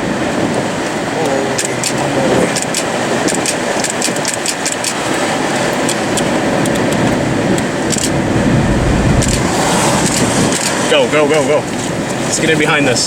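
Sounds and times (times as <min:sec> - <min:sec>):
loud steady rushing noise: 0:07.6 - 0:11.3
car engine running: 0:07.8 - 0:10.8
low rumble: 0:07.9 - 0:10.8.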